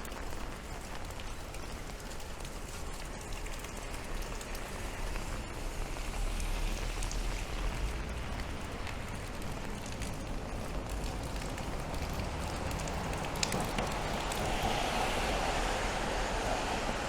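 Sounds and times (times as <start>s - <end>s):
steady rain patter: 0.0s - 17.0s.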